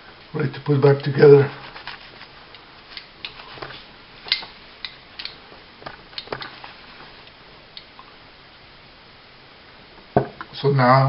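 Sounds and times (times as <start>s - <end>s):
pistol parts clicking: 4.3s - 5.4s.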